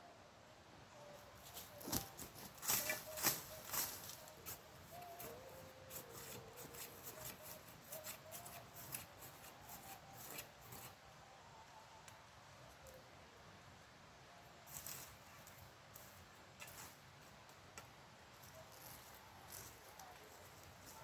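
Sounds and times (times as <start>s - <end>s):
trowel scraping soil: 1.4s - 11.0s, 18.5s - 21.0s.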